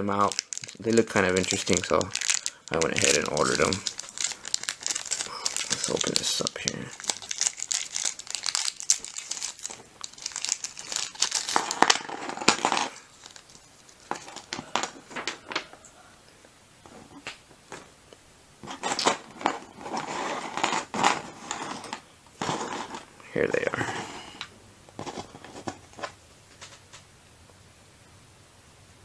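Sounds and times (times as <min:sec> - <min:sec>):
packaging crinkling and tearing: 0:00.0 - 0:15.8.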